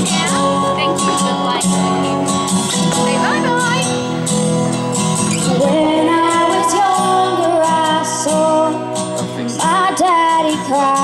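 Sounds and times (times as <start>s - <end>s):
guitar accompaniment: 0.0s - 11.0s
woman singing a ballad: 5.5s - 11.0s.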